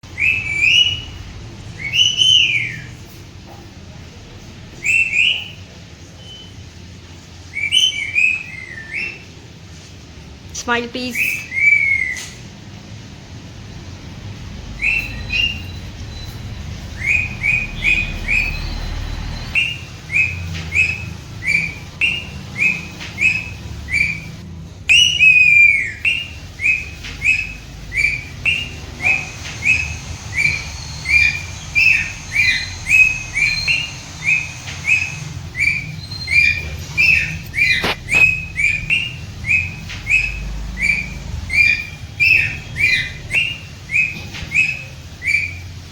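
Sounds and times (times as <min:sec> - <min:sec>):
parrot chirping: 0:00.1 - 0:01.2, 0:01.8 - 0:03.1, 0:10.6 - 0:12.4, 0:14.6 - 0:45.9.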